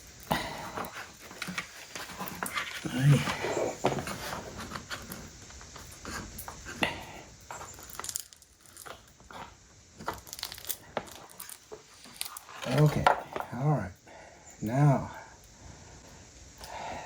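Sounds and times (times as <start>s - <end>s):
veneer crackling against glue: 7.5s - 13.1s.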